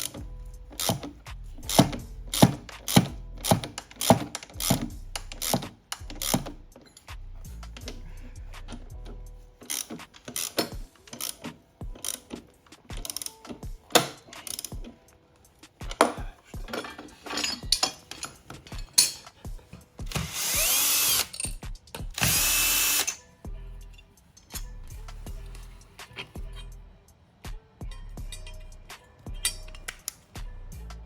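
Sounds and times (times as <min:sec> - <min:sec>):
metal tool clicks and knocks: 0:00.0 - 0:23.2, 0:27.9 - 0:30.3
electric drill running: 0:20.1 - 0:21.3, 0:22.1 - 0:23.2.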